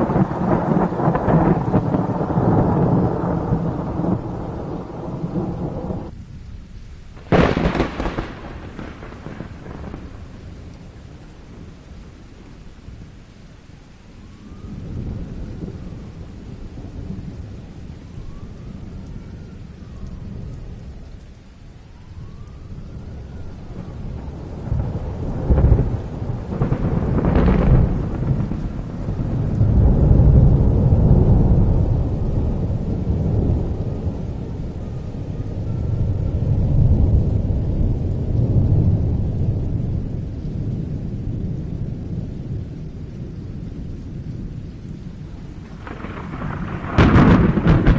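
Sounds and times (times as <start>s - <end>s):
thunder cracks and rumbles: 0.0s - 6.1s, 7.2s - 10.8s, 22.2s - 44.7s, 45.6s - 47.9s
heavy rain: 0.0s - 47.9s.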